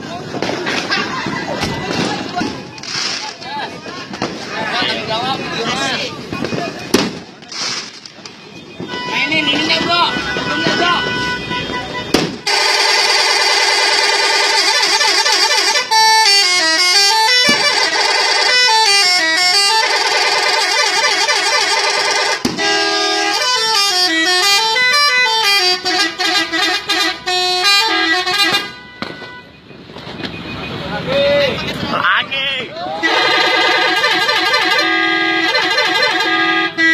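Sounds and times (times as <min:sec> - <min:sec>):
multi-tone vehicle horn melody: 0:08.4 - 0:29.7, 0:33.0 - 0:36.9.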